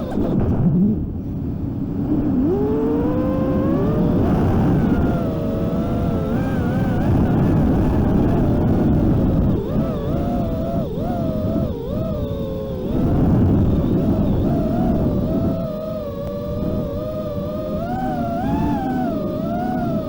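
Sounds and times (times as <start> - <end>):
drone motors whining: 0.0 - 20.0
wind noise: 0.0 - 20.0.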